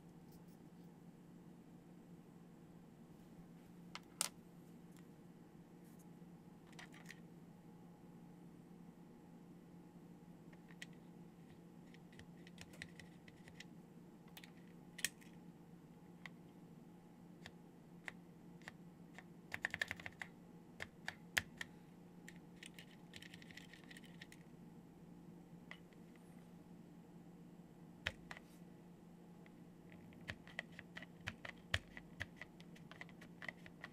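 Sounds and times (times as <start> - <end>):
mechanical keyboard keystrokes: 11.9 - 13.7, 19.5 - 21.7, 22.3 - 24.4, 30.1 - 33.9.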